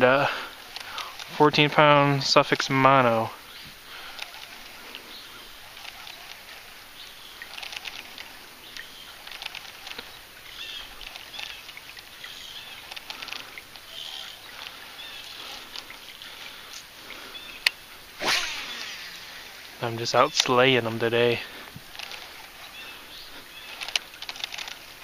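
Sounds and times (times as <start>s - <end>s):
outdoor ambience: 0.0s - 25.0s
small birds chirping: 0.0s - 25.0s
light ticks: 0.7s - 1.7s, 7.4s - 10.2s, 10.9s - 16.9s.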